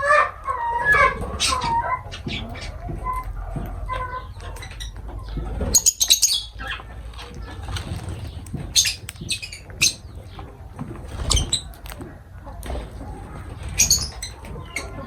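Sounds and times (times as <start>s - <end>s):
wings fluttering: 0.5s - 15.0s
birds chirping shrilly: 3.9s - 10.5s, 13.6s - 15.0s.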